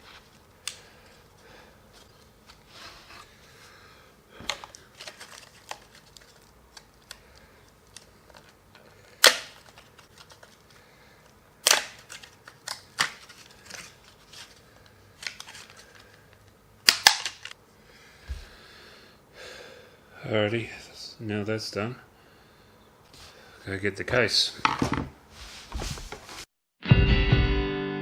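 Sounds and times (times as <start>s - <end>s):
plastic parts snapping: 4.4s - 7.2s, 7.8s - 10.7s, 11.6s - 14.5s, 15.2s - 17.6s.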